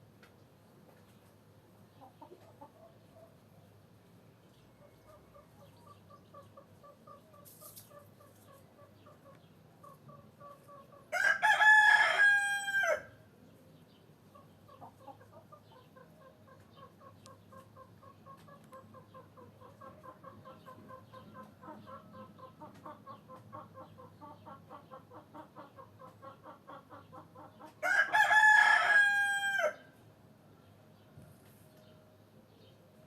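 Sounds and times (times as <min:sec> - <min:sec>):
chickens clucking: 0:00.9 - 0:03.6, 0:04.6 - 0:11.2, 0:13.8 - 0:27.9
rooster crowing: 0:11.1 - 0:13.1, 0:27.8 - 0:29.9.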